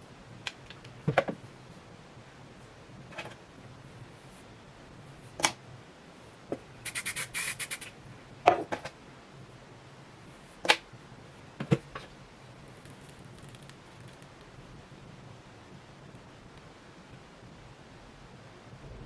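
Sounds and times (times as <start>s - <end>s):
fast bright scratching: 6.8s - 8.0s.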